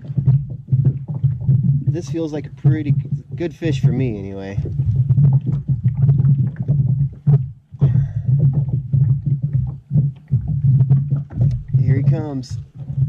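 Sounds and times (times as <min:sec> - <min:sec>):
low pulsing hum: 0:00.0 - 0:13.0.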